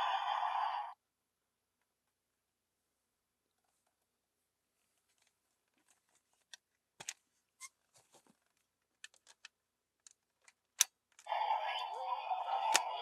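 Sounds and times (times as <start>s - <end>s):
plastic toy parts clicking: 12.6s - 13.0s.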